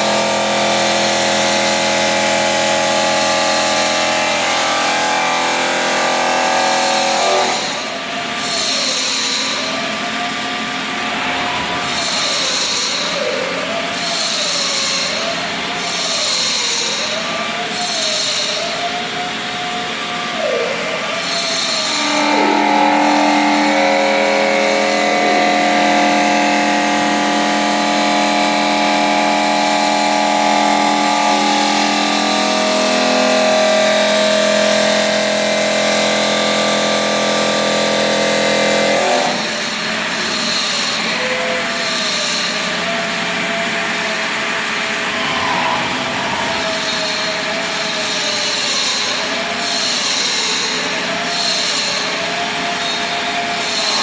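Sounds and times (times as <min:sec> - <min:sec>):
stone-cutting saw whining: 0:00.0 - 0:54.0
grinding hiss: 0:05.8 - 0:17.1.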